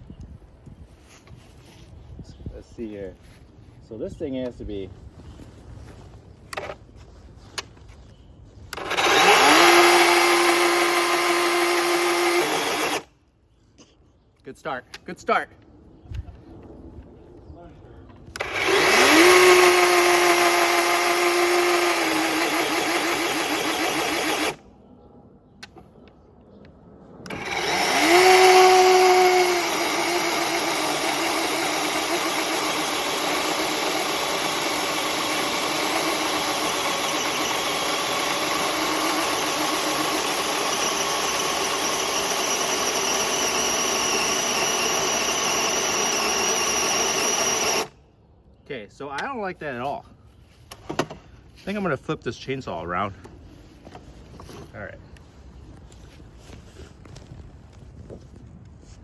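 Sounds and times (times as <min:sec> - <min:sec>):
chainsaw cutting log: 0:08.8 - 0:13.1, 0:18.4 - 0:24.6, 0:27.3 - 0:47.9.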